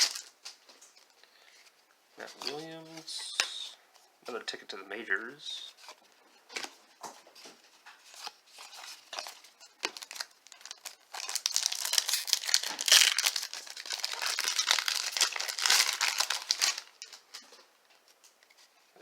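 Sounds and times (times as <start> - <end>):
wrapper crinkling and tearing: 0.0 - 0.4, 8.0 - 17.4.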